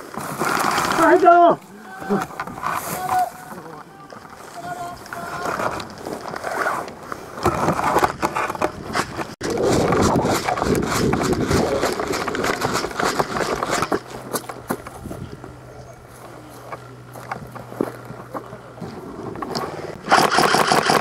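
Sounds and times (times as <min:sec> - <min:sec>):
rustling through dry leaves: 0:00.0 - 0:06.9.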